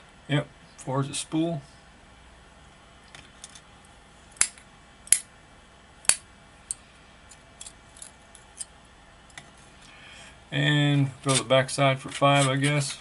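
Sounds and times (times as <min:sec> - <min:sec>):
tweezers clicking on metal pins: 0:04.4 - 0:05.3.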